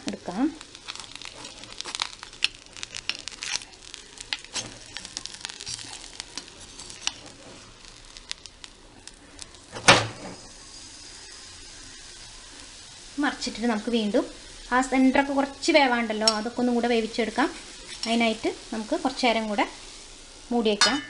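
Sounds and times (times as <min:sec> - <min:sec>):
food sizzling in a pan: 0:00.0 - 0:21.0
loud thump: 0:09.8 - 0:10.4.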